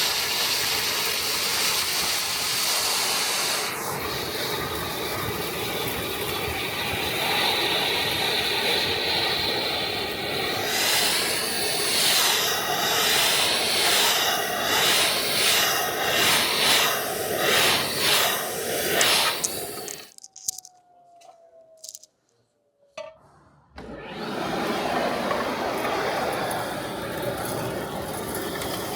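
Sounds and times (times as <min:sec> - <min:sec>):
industrial vacuum blower hissing: 0:00.0 - 0:20.6, 0:23.8 - 0:28.9
vacuum drawing up dust and chips: 0:00.0 - 0:20.6, 0:23.8 - 0:28.9.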